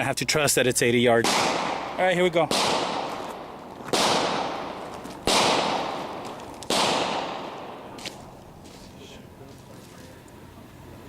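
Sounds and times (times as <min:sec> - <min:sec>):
shotgun shots with echo: 0:01.1 - 0:08.3.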